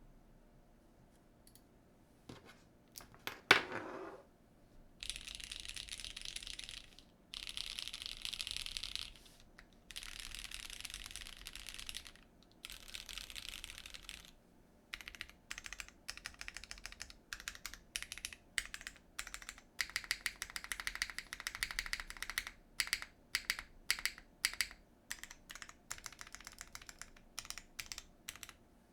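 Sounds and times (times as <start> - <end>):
mechanical keyboard typing: 5.0 - 9.2, 9.9 - 28.6.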